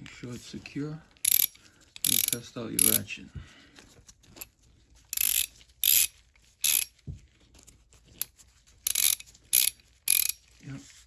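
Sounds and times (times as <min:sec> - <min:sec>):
ratchet clicking: 0:01.2 - 0:03.0, 0:05.2 - 0:06.9, 0:08.9 - 0:10.4.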